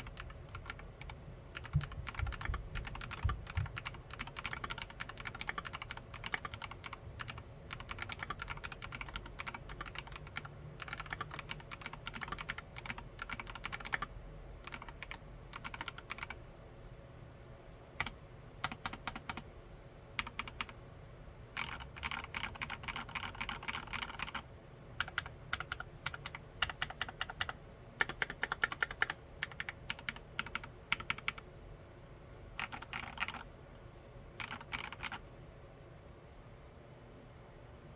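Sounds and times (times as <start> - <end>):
mechanical keyboard typing: 0.0 - 16.4, 18.0 - 19.5, 20.2 - 20.8, 21.6 - 24.4, 25.0 - 31.4, 32.6 - 33.5, 34.4 - 35.2.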